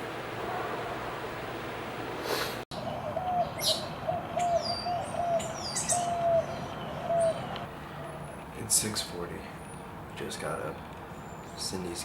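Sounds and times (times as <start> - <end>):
high bird chirps: 2.8 - 8.4.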